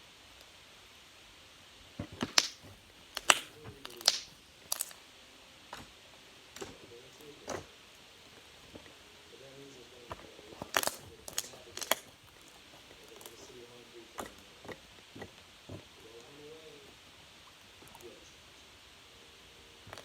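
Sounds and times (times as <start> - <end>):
sharp irregular clicks and pops: 2.1 - 5.0, 10.6 - 13.6.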